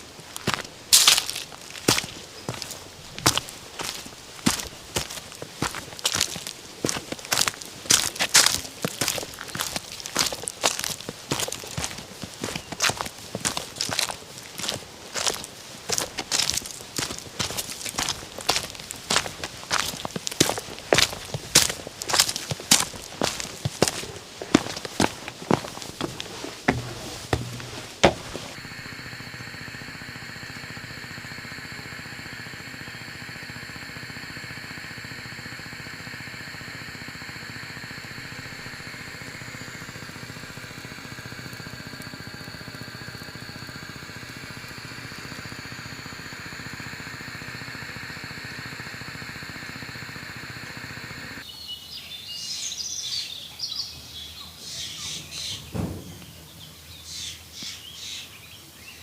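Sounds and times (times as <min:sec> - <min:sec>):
birds chirping: 0:00.0 - 0:28.6, 0:50.9 - 0:59.0
footsteps on earth steps: 0:00.0 - 0:28.6
gas stove burner hissing: 0:00.0 - 0:51.4.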